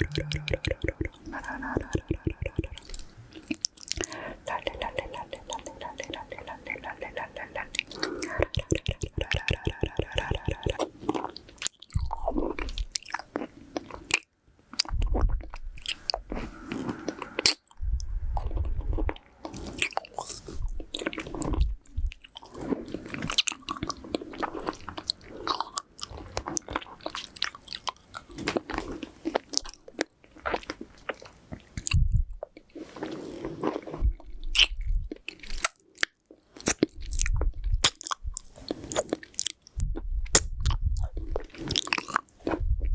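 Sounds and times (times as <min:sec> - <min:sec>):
nose breath on microphone: 0:00.0 - 0:03.2, 0:04.0 - 0:10.8
sucking candy: 0:00.0 - 0:12.6
wet mouth clicks: 0:00.0 - 0:13.2, 0:34.0 - 0:42.7.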